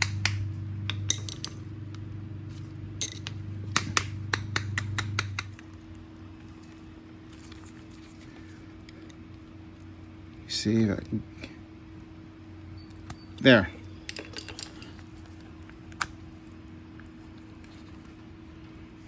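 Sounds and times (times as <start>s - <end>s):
metal tool clicking on metal: 0.0s - 1.6s, 3.0s - 5.6s
steady low hum: 0.0s - 19.0s.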